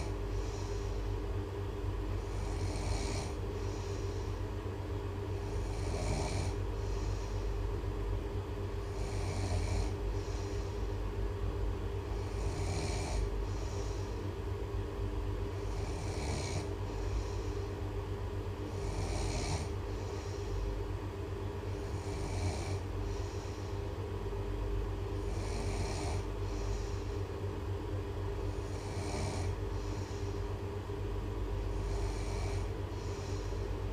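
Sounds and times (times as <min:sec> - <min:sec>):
loud breathy snoring: 0:00.0 - 0:01.1, 0:02.2 - 0:04.4, 0:05.4 - 0:07.4, 0:08.8 - 0:10.8, 0:12.0 - 0:14.2, 0:15.5 - 0:17.6, 0:18.7 - 0:20.7, 0:21.7 - 0:23.8, 0:25.2 - 0:27.2, 0:28.4 - 0:30.4, 0:31.6 - 0:33.6
steady low hum: 0:00.0 - 0:33.9.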